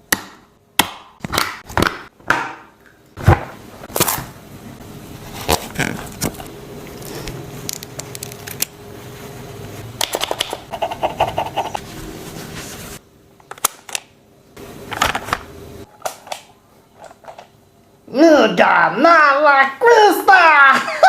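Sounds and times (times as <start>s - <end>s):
steady low hum: 2.8s - 18.1s.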